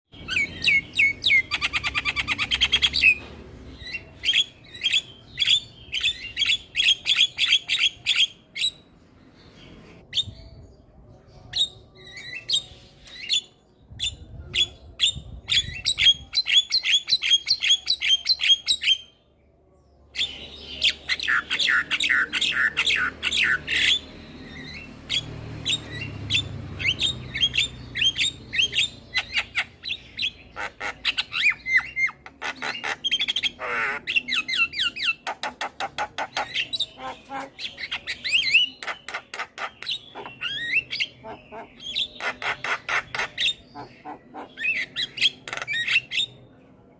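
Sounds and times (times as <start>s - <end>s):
myna singing chirps and squawks: 0.1s - 8.9s, 11.5s - 19.2s, 20.1s - 46.5s.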